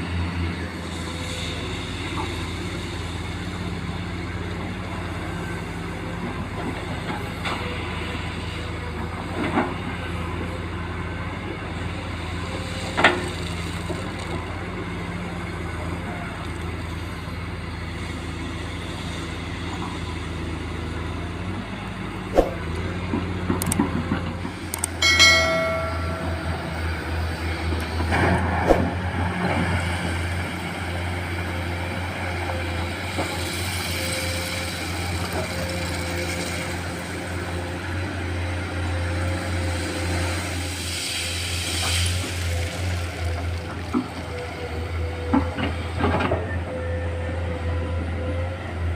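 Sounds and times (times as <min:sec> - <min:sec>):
excavator diesel engine running: 0:00.0 - 0:48.9
steady whine: 0:24.8 - 0:27.5
short ringing tone: 0:25.0 - 0:27.5.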